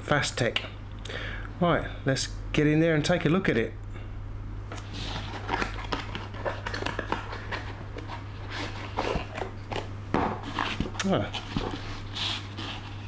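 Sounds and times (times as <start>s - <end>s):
steady low hum: 0.0s - 13.0s
packaging crackling and rustling: 4.7s - 13.0s.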